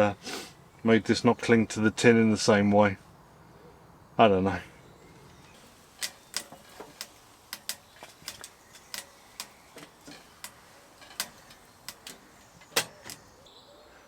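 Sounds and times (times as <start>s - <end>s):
sharp clicks and ticks: 6.0s - 13.2s.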